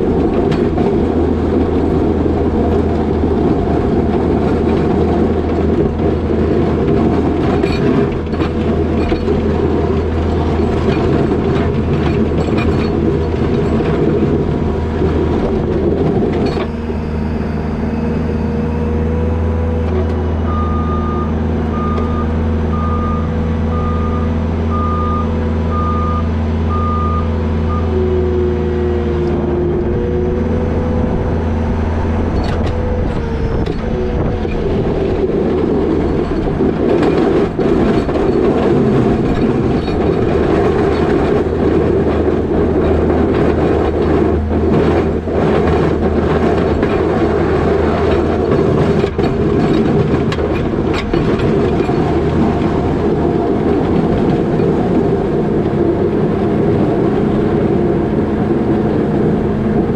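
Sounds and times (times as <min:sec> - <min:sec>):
diesel engine working hard: 0:00.0 - 0:59.9
backup alarm beeping: 0:20.4 - 0:28.0.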